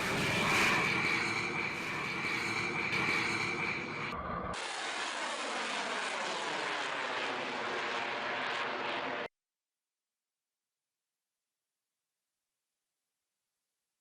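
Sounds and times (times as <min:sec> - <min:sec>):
dull steady rushing noise: 0:00.0 - 0:09.3
jet engine whine: 0:00.0 - 0:09.3.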